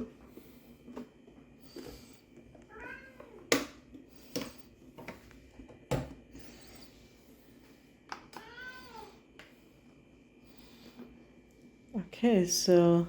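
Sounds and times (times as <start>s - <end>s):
cat meowing: 2.7s - 3.4s, 8.4s - 9.2s.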